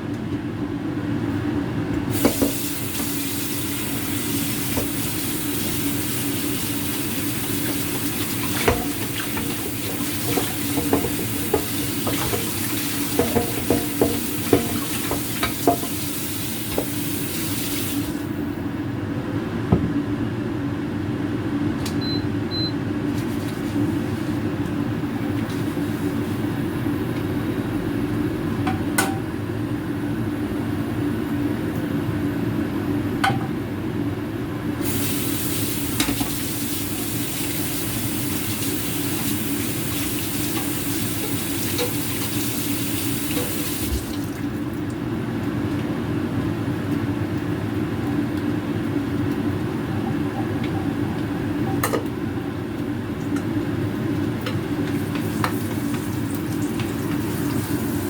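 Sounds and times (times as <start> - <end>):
food sizzling in frying pan: 2.1 - 18.5, 34.8 - 44.1, 54.7 - 58.0.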